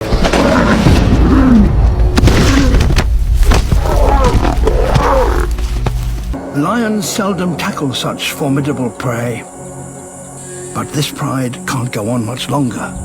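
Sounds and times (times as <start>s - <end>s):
background music: 0.0s - 13.0s
lions growling: 0.1s - 5.9s
heavy low rumble: 0.8s - 6.4s.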